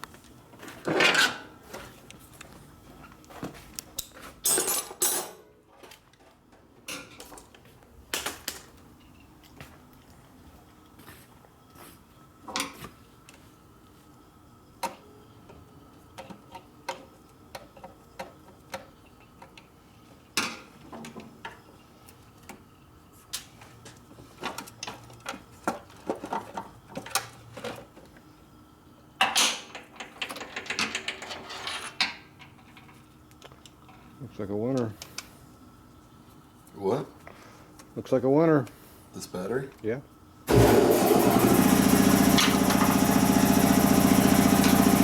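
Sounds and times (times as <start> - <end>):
clicks and knocks of tools: 3.2 - 10.2, 16.2 - 19.7.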